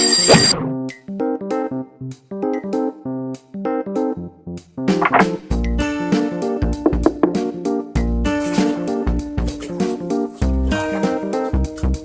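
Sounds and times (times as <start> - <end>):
upbeat music with beat: 6.6 - 12.0.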